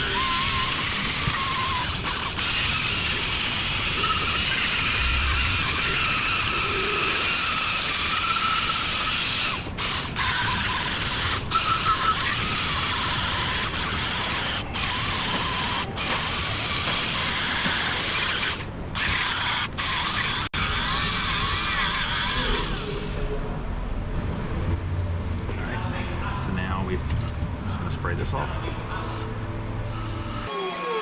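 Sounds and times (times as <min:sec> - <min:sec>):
handheld power tool running: 0:00.0 - 0:22.9.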